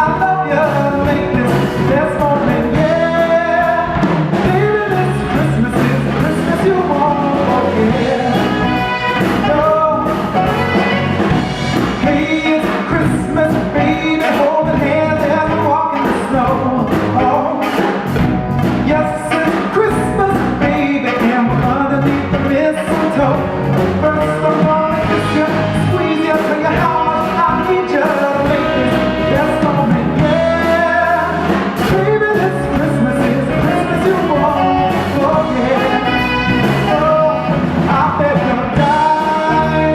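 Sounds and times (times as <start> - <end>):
person singing lead vocals: 0.0 - 18.2, 18.8 - 39.9
drum kit beat: 0.0 - 39.9
live band playing: 0.0 - 39.9.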